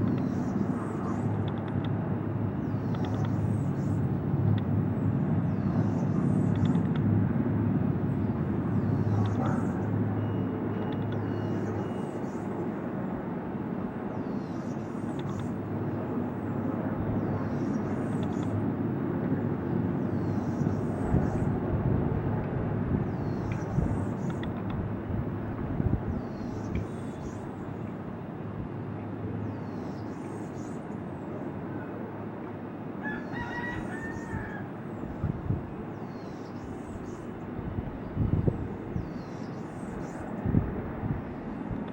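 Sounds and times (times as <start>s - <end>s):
rooster-like call: 33.0s - 34.7s.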